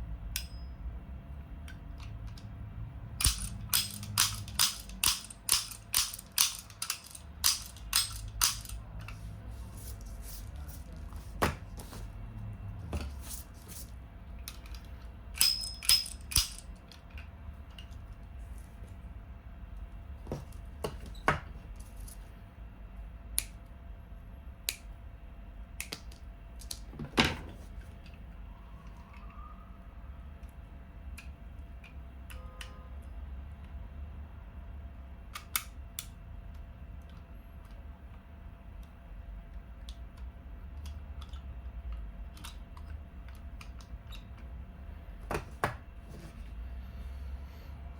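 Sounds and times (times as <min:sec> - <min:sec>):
low steady rumble: 0:00.0 - 0:47.9
steady low hum: 0:00.0 - 0:47.9
toy revolver clicking: 0:03.2 - 0:08.8.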